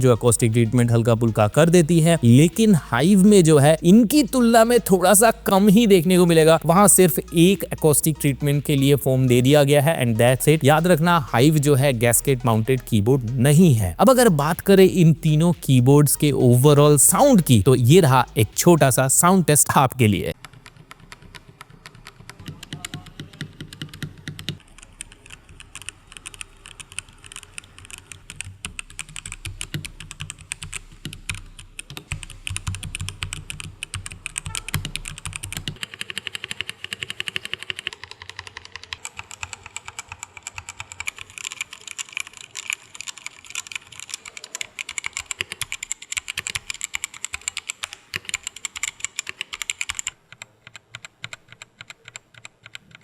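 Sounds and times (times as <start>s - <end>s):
fast typing on mechanical keyboard: 20.4s - 53.0s.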